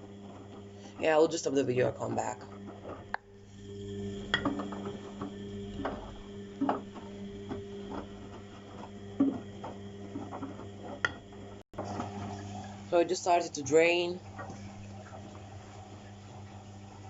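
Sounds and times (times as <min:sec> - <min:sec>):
washing machine motor hum: 0:00.0 - 0:17.0
drum knocking and clicking: 0:04.3 - 0:11.9.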